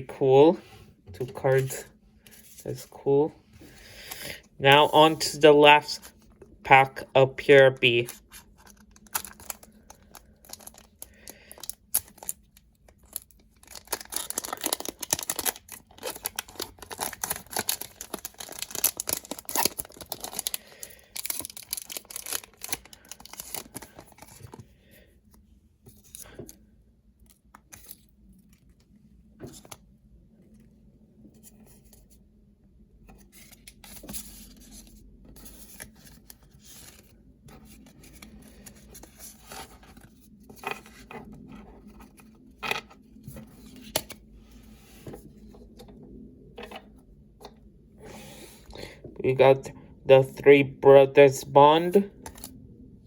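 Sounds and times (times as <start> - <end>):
cards rustling and tapping: 7.9 - 24.7
wrapper crinkling and tearing: 8.1 - 24.6.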